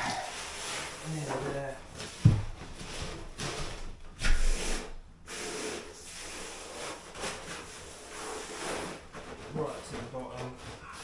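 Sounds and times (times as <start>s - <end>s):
liner rubbing hiss: 4.3s - 9.1s.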